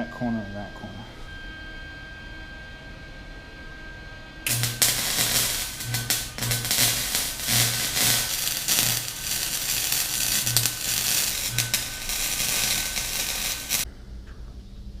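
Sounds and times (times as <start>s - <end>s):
low hum: 0.0s - 15.0s
welder arc crackling: 4.4s - 13.9s.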